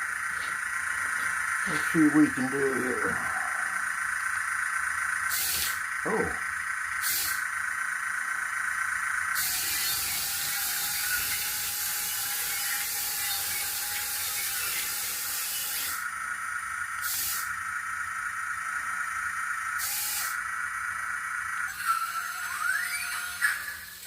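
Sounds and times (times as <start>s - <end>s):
steady high whine: 0.0s - 24.0s
toy speaker hissing: 5.2s - 7.5s, 9.2s - 16.1s, 17.0s - 17.6s, 19.7s - 20.5s, 21.6s - 24.0s.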